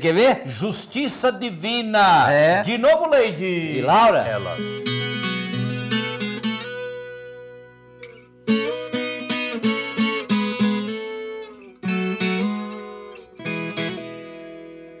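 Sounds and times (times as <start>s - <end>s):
acoustic guitar strumming: 3.8s - 15.0s.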